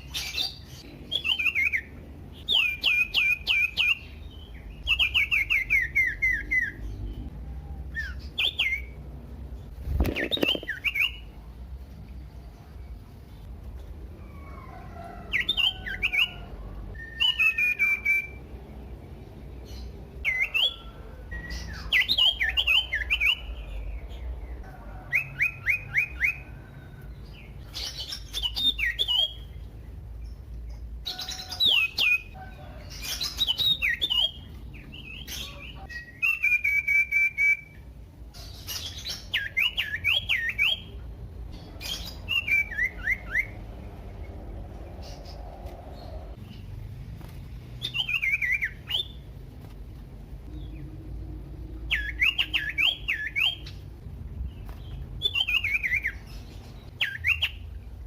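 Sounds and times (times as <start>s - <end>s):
bird singing whistled notes: 0.0s - 7.2s, 7.9s - 9.0s, 10.3s - 11.3s, 17.0s - 18.4s, 19.8s - 24.0s, 27.8s - 29.6s, 33.1s - 37.8s, 38.6s - 41.0s, 41.8s - 43.6s, 47.8s - 49.2s, 51.9s - 53.8s, 55.2s - 57.7s.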